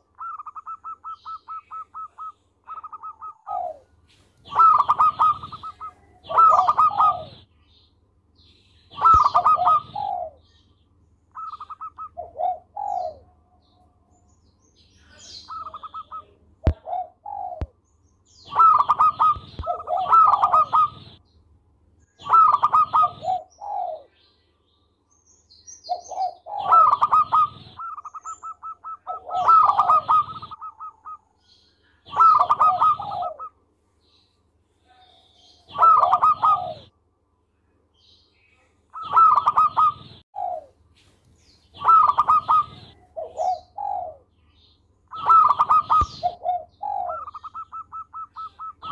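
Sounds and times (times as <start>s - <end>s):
dove cooing: 0.0s - 7.5s, 8.9s - 10.5s, 11.3s - 13.7s, 15.0s - 17.8s, 18.4s - 21.2s, 22.2s - 24.2s, 25.9s - 31.4s, 32.0s - 33.6s, 34.8s - 36.9s, 38.9s - 40.8s, 41.7s - 44.3s, 45.1s - 48.9s.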